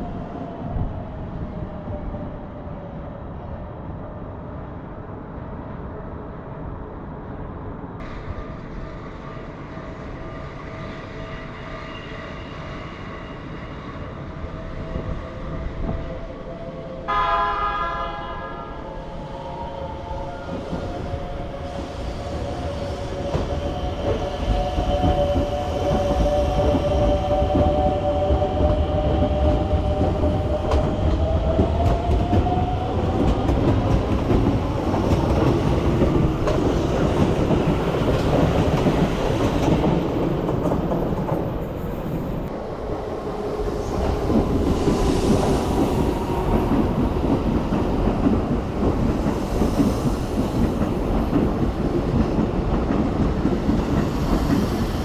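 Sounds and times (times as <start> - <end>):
train horn blast: 17.1 - 18.9
train wheels clattering on rails: 20.5 - 42.5, 43.8 - 55.0.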